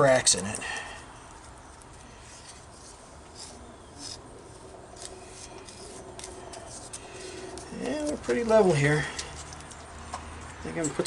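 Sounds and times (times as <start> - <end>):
scraping wet cement: 2.1 - 9.8.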